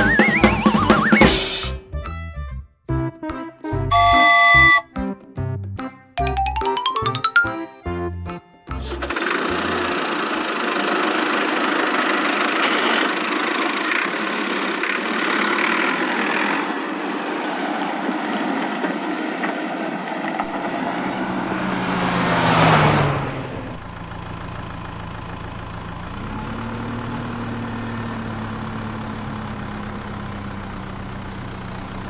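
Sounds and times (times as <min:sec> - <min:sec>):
vehicle engine running: 0:09.0 - 0:16.6, 0:20.5 - 0:32.0
low hum: 0:20.5 - 0:23.9.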